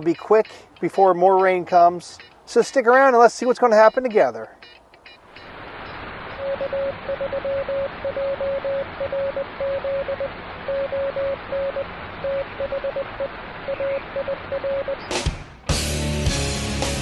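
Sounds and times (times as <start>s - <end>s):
morse code tone: 3.4s - 15.1s.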